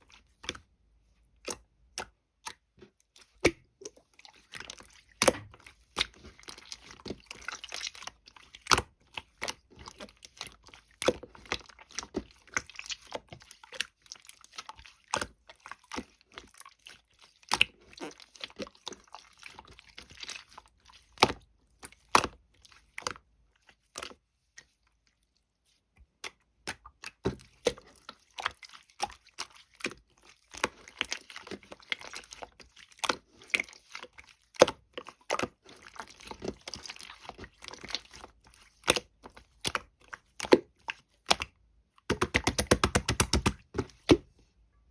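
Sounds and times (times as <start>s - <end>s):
fast sharp taps: 42.1s - 43.6s.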